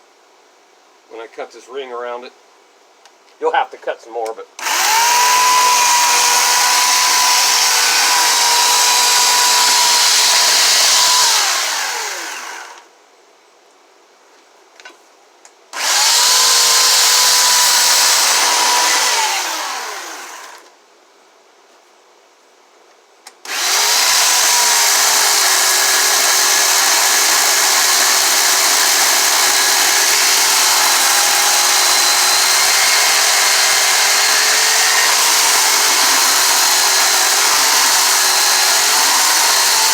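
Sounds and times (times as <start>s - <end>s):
power carving tool cutting wood: 4.6s - 12.8s, 15.8s - 20.7s, 23.5s - 39.9s.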